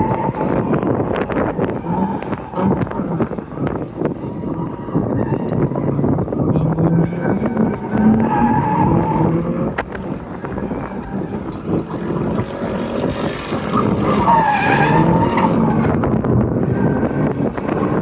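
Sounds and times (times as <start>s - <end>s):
car engines revving: 0.0s - 18.0s
tires squealing: 0.0s - 18.0s.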